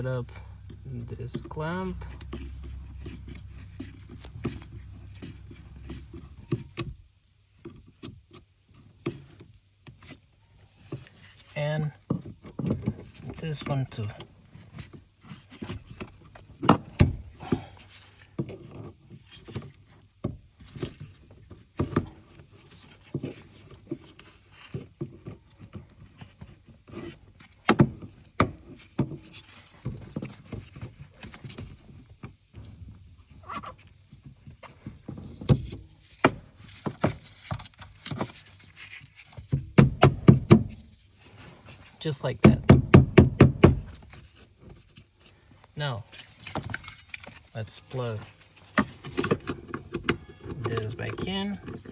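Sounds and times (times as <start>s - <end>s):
hand tool clicking and knocking: 42.4s - 44.0s.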